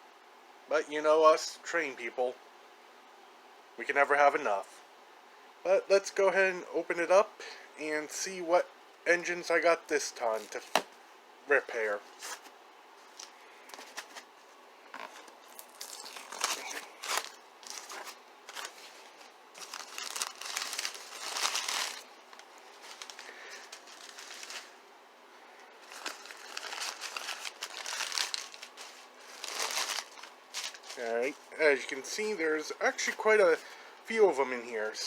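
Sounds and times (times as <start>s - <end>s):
packing material crinkling: 12.0s - 14.3s, 14.9s - 24.8s, 25.8s - 33.8s.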